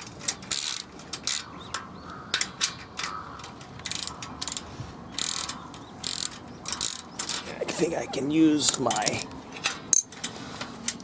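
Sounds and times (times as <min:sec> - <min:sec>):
ratcheting socket wrench clicking: 0:00.2 - 0:01.5, 0:03.8 - 0:04.6, 0:05.2 - 0:07.4.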